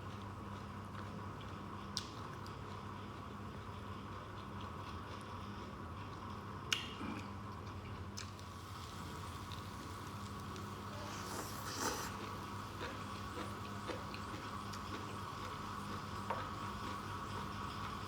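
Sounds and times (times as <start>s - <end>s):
soft chewing: 0.0s - 18.0s
steady low hum: 8.4s - 18.0s.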